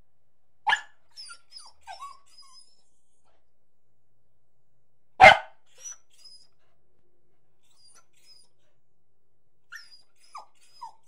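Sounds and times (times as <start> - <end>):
dog barking: 0.7 - 0.9, 5.2 - 5.6
faint high-pitched squeaks: 9.7 - 11.0.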